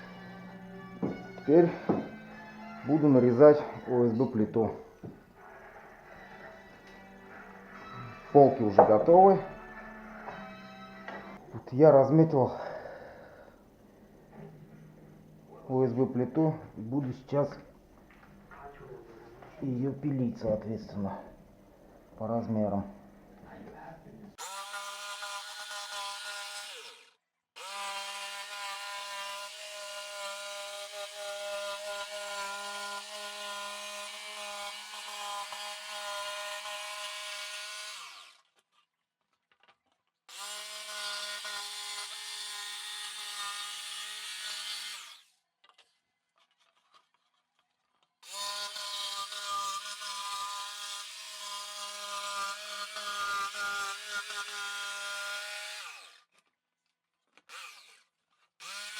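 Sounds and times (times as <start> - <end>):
jigsaw cutting board: 24.4 - 38.8, 39.6 - 56.5, 57.3 - 58.9.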